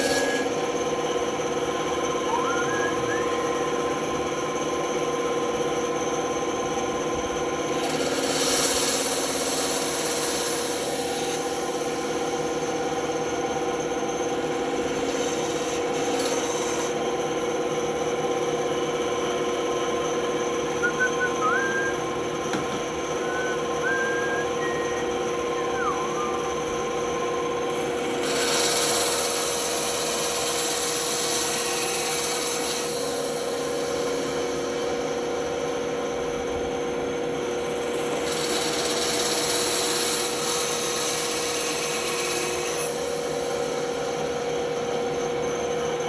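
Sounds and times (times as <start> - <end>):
saw blade cutting wood: 0.0 - 0.6, 27.9 - 33.1
band saw humming: 0.0 - 5.6, 14.0 - 32.0.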